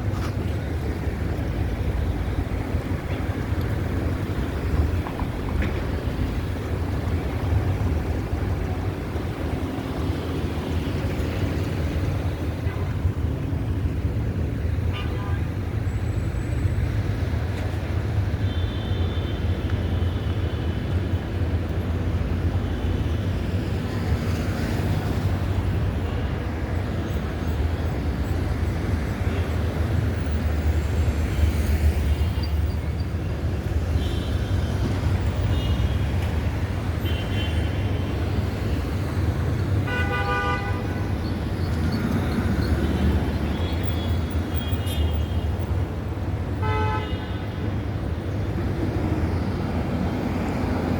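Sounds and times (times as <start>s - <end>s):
street traffic rumble: 0.0s - 50.9s
car horn toots: 39.9s - 40.9s, 46.6s - 47.2s.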